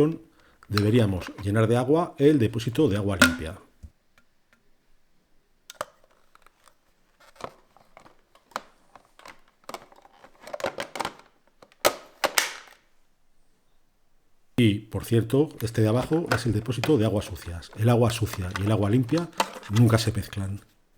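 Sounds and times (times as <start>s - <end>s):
plastic clicks and knocks: 3.2s - 4.6s, 5.7s - 12.8s, 16.0s - 20.3s.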